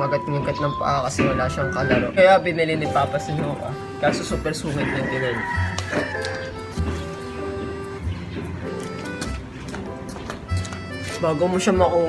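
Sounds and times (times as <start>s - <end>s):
background music: 0.0s - 12.0s.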